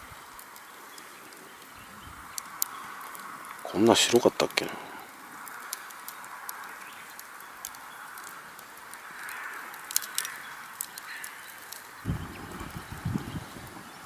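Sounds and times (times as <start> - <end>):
campfire crackling: 0.0 - 14.0.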